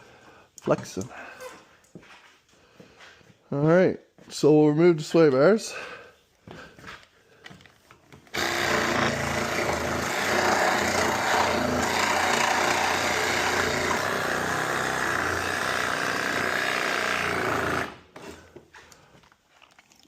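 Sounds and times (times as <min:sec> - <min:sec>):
power tool cutting metal: 0:08.4 - 0:18.0.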